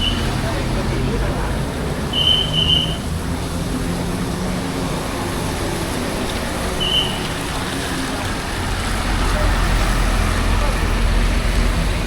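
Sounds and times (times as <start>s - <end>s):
bus engine running: 0.0s - 12.0s
traffic hiss: 0.0s - 12.0s
short high whistle blip: 2.1s - 3.0s, 6.8s - 7.2s.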